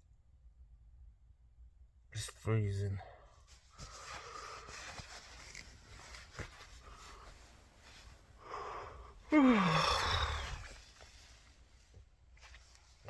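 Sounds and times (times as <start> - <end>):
man yawning: 9.3 - 10.7.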